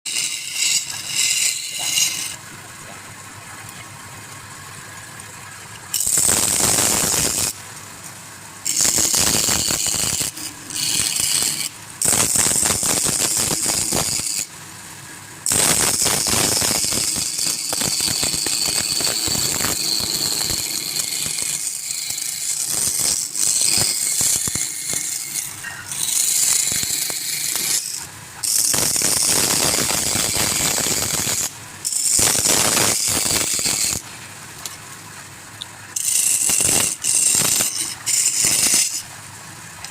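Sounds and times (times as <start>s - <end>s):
wood lathe cutting hiss: 0.1s - 2.4s, 5.9s - 7.6s, 8.6s - 14.5s, 15.4s - 34.0s, 36.0s - 39.2s.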